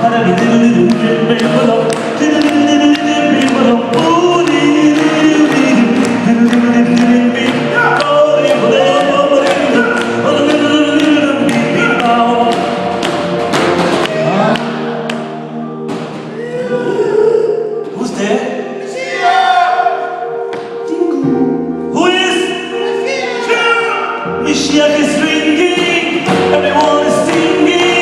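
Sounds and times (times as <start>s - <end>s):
men singing together: 0.0s - 13.0s, 24.3s - 28.0s
sharp rhythmic beats: 0.0s - 16.6s, 22.0s - 28.0s.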